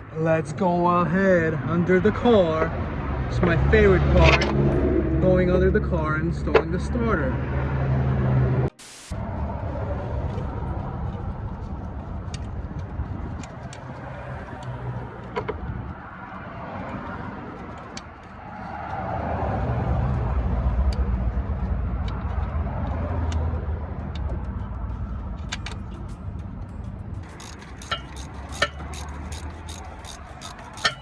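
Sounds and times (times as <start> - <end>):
motor vehicle traffic rumbling: 0.0 - 31.0.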